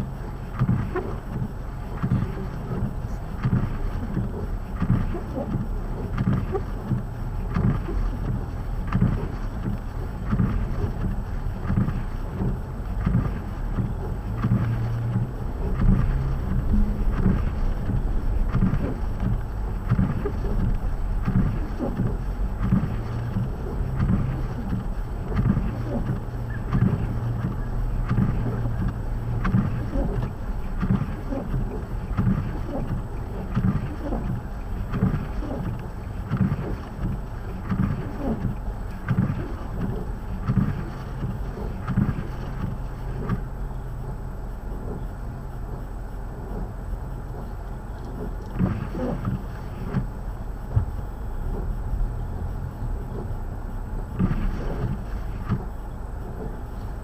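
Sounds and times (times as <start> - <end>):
low motor rumble: 0.0 - 57.0
wind buffeting microphone: 6.9 - 43.5.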